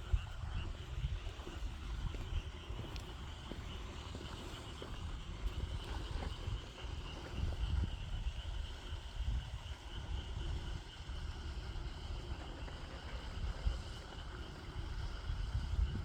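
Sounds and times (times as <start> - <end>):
insects chorus: 0.0 - 16.0
wind buffeting microphone: 0.0 - 16.0.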